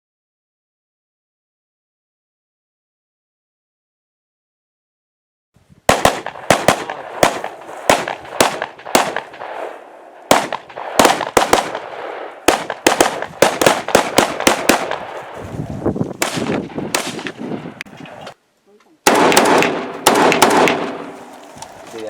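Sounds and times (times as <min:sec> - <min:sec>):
rifle shots echoing: 0:05.9 - 0:15.5, 0:16.2 - 0:18.2, 0:19.0 - 0:21.4.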